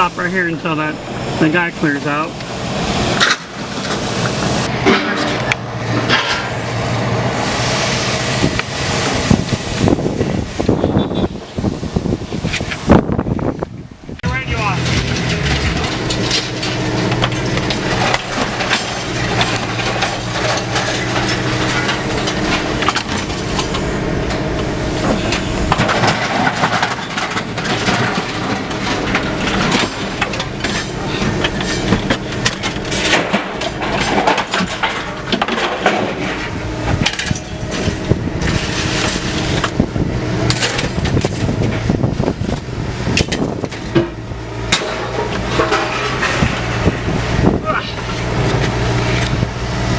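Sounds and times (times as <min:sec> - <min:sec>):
engine running: 0:00.0 - 0:49.9
scrap metal clattering: 0:02.9 - 0:06.6, 0:14.3 - 0:24.4, 0:25.0 - 0:47.2.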